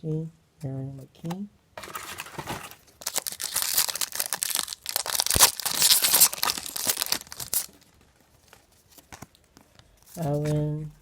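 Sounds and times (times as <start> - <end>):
wrapper tearing and crinkling: 1.8 - 9.0.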